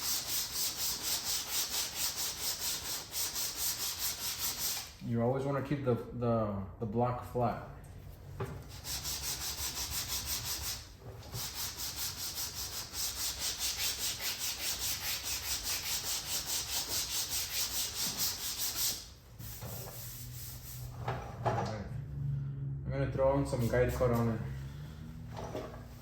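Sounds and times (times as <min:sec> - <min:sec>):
sandpaper rubbing back and forth: 0:00.0 - 0:05.0, 0:08.7 - 0:20.9.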